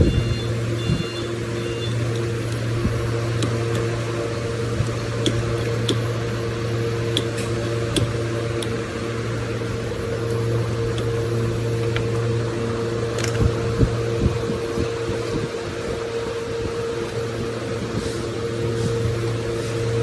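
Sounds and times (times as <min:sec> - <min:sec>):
steady machine hum: 0:00.0 - 0:20.0.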